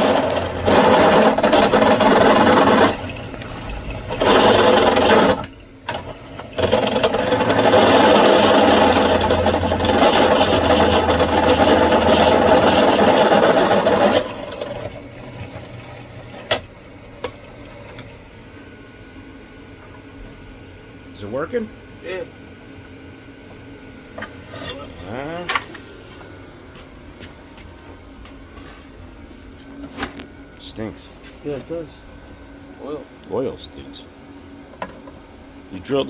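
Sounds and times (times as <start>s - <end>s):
power tool on metal plate: 0.0s - 14.9s.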